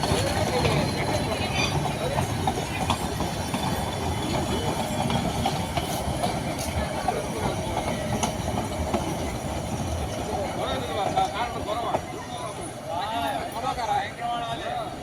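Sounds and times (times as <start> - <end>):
clicks from wheels and couplings: 0.0 - 9.3
rumble of wheels on rails: 0.0 - 15.0.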